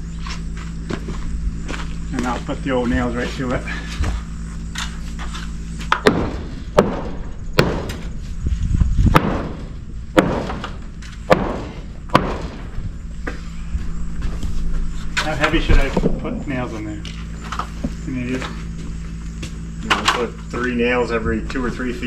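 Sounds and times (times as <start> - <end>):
steady low hum: 0.0 - 22.0
hammer striking nails into wood: 5.9 - 8.0, 9.1 - 9.6, 10.2 - 12.6.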